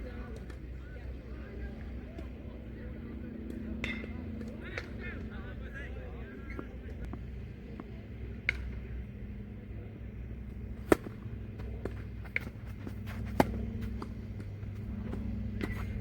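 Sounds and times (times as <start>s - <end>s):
steady low hum: 0.0s - 16.0s
tennis ball hit with rackets: 10.8s - 14.5s
tennis ball bouncing on court: 10.8s - 16.0s.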